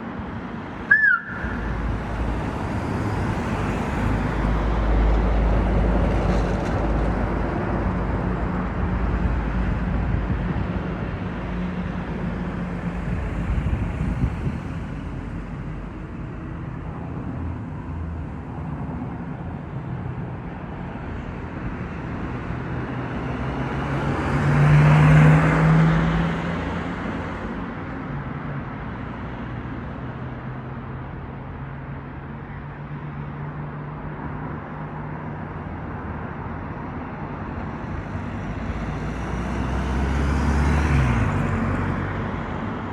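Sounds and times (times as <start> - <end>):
vehicle passing by: 23.2 - 27.3, 37.8 - 42.7.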